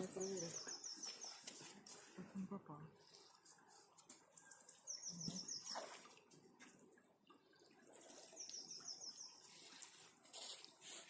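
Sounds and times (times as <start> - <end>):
water dripping and splashing: 3.0 - 11.0.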